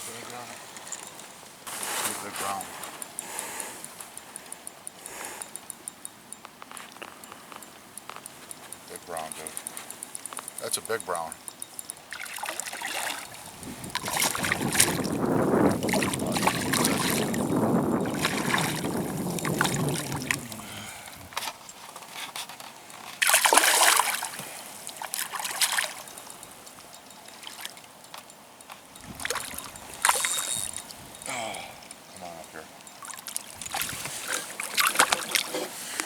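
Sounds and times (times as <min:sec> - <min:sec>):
water splashing: 0:12.1 - 0:21.4, 0:23.2 - 0:28.0, 0:28.9 - 0:36.0.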